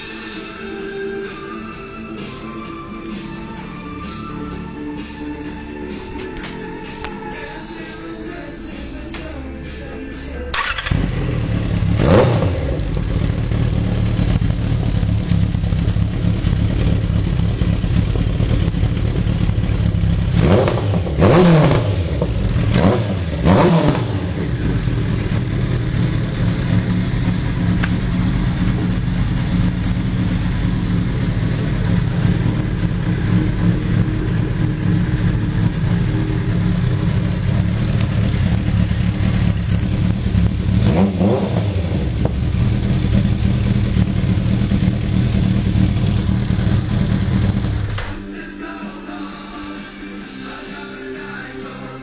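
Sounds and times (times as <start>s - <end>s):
motorcycle engine idling: 10.5s - 48.2s
motorcycle engine revving: 10.5s - 48.2s.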